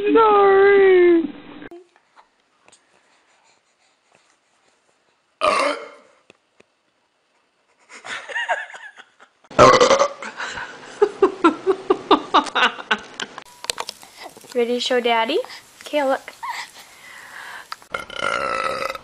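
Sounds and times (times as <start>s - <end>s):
person burping: 5.4s - 6.2s, 9.5s - 10.3s, 17.9s - 19.0s
vocal sounds: 17.9s - 19.0s.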